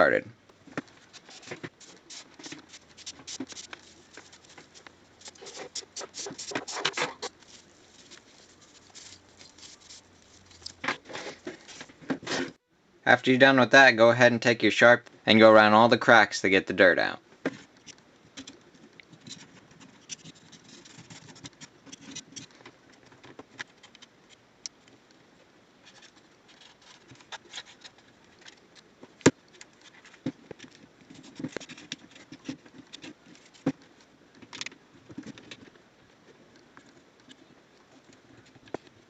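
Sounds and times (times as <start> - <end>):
pointed tool scratching plastic: 0.8 - 12.6, 19.2 - 22.6.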